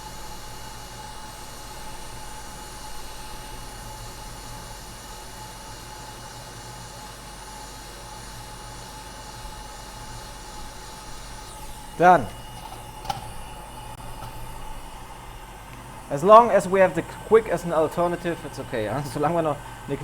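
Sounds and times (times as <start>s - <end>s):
hot air blower hissing: 0.0s - 20.0s.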